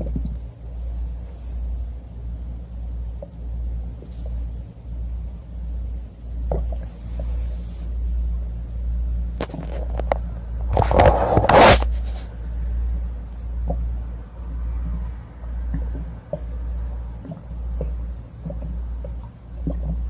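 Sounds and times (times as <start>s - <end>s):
stomach rumbling and gurgling: 0.0s - 0.5s, 6.4s - 8.0s, 9.4s - 12.3s, 13.6s - 14.0s, 14.6s - 20.0s.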